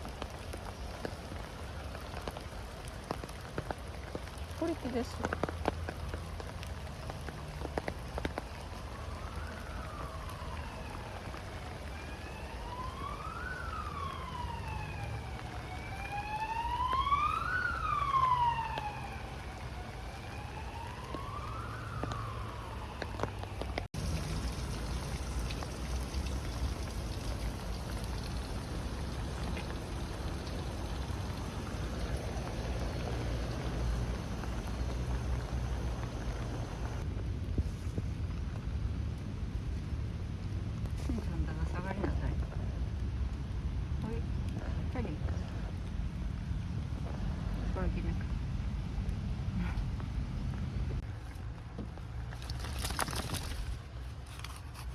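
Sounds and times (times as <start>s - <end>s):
steady rain: 0.0s - 54.9s
emergency vehicle siren wailing: 1.0s - 37.1s.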